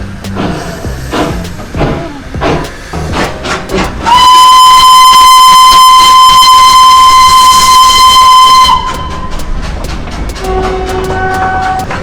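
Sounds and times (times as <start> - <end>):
steam locomotive whistle blast: 4.0 - 9.4, 10.4 - 12.0.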